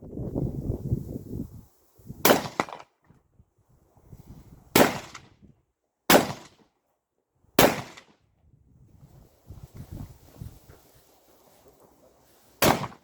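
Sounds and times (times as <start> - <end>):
carbine shots with echo: 2.2 - 2.9, 4.7 - 5.3, 6.1 - 6.6, 7.6 - 8.2, 12.6 - 13.0.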